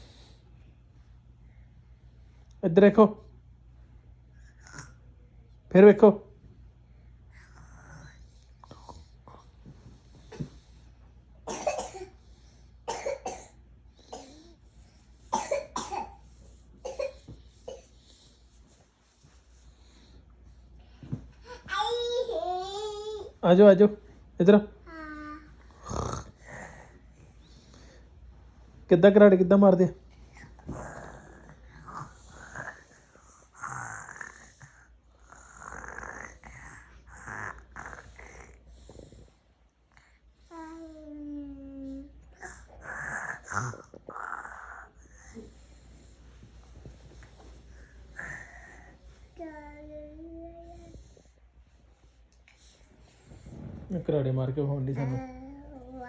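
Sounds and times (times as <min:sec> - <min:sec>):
child imitating snoring: 0:24.9 - 0:27.0, 0:30.6 - 0:39.3, 0:42.4 - 0:45.5.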